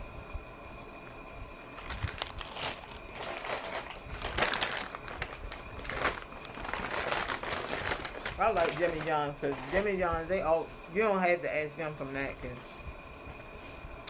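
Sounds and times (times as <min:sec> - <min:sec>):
paper wrapper crinkling: 0:01.8 - 0:10.1.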